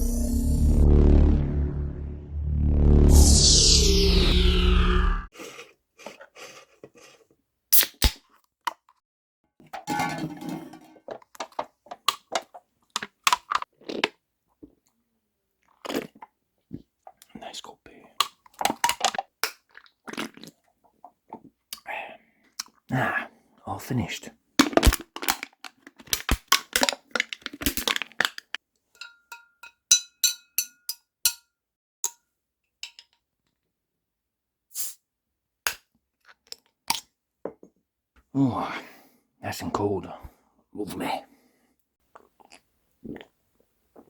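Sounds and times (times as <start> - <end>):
glass bottles clinking: 9.7 - 11.7
crackling handling noise: 24.6 - 28.6.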